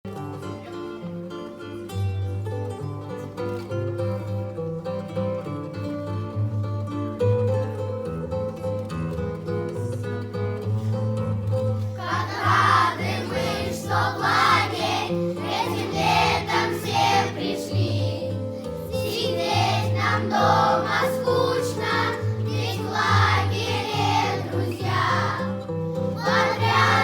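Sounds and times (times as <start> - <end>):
strummed acoustic guitar: 0.1 - 27.0
children singing in unison: 12.0 - 27.0.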